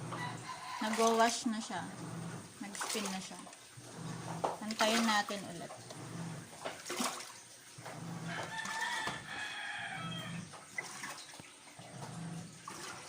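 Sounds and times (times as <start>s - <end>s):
washing machine churning hum: 0.0s - 13.0s
rooster crowing: 0.1s - 1.1s, 8.2s - 10.5s.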